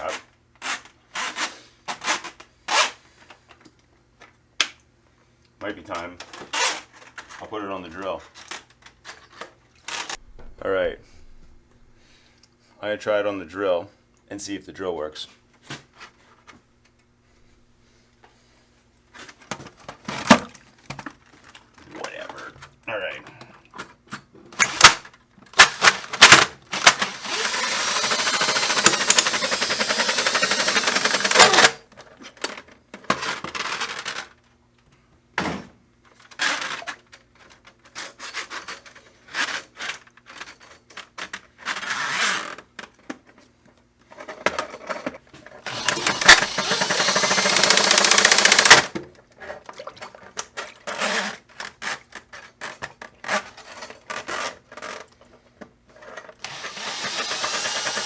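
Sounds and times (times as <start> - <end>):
power drill spinning: 25.8 - 31.8, 45.6 - 48.9, 56.4 - 58.0.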